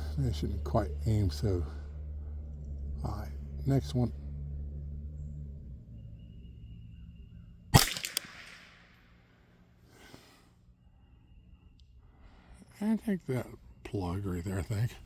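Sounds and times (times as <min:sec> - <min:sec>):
rifle shot crack: 0:07.7 - 0:09.1
quick faint clicks: 0:07.8 - 0:08.8.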